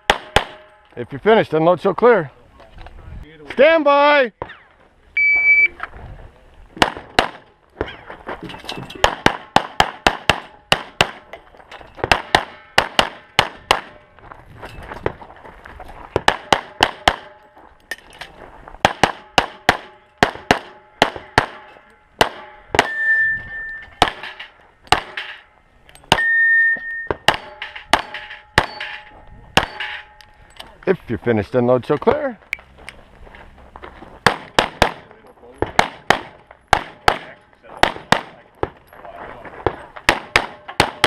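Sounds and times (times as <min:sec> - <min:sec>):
rapid pistol shots: 0:00.0 - 0:00.6, 0:09.0 - 0:11.2, 0:12.1 - 0:14.0, 0:16.2 - 0:17.4, 0:18.8 - 0:21.6, 0:24.0 - 0:25.4, 0:34.2 - 0:35.1, 0:35.7 - 0:38.4, 0:40.0 - 0:41.0
steel targets clanging: 0:20.8 - 0:30.7.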